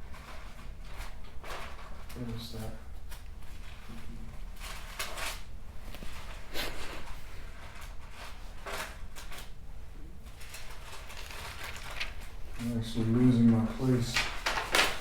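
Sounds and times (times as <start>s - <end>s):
low room hum: 0.0s - 15.0s
pages being flipped: 3.0s - 9.6s, 10.2s - 15.0s.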